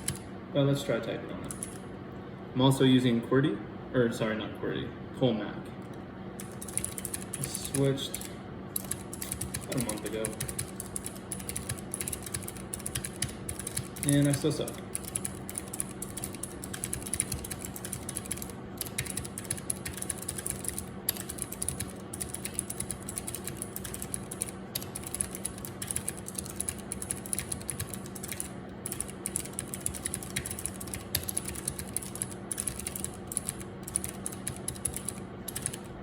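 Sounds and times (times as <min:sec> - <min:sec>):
computer fans humming: 0:00.0 - 0:36.0.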